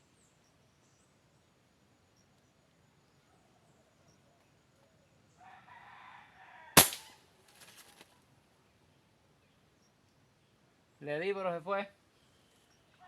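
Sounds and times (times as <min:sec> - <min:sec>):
gunshot: 0:06.8 - 0:07.1.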